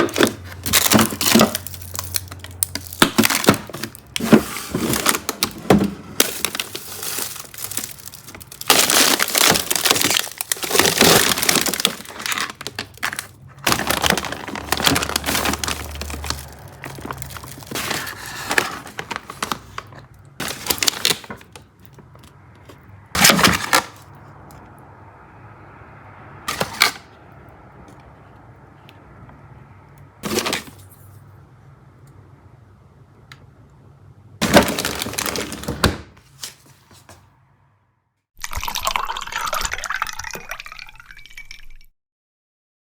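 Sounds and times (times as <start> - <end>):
plastic packaging clattering and crinkling: 0.0 - 24.1, 30.2 - 31.0, 34.4 - 37.2.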